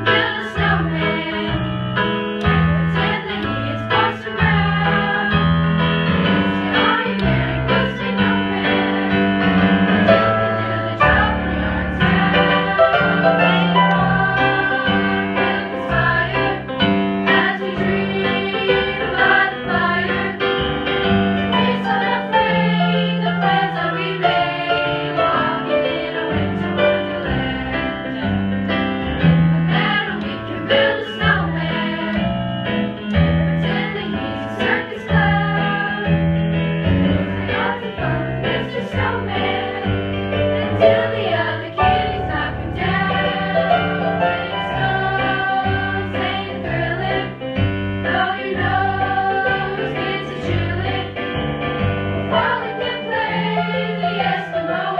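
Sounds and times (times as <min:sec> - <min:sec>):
gospel choir singing: 0:00.0 - 0:54.9
piano accompaniment: 0:00.0 - 0:54.9.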